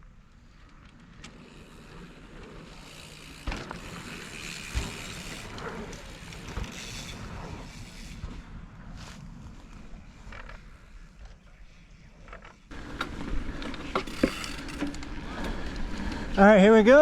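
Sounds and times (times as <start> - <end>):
bike tyres rolling on dirt: 0.0 - 17.0
bike knocking over bumps: 3.2 - 5.5.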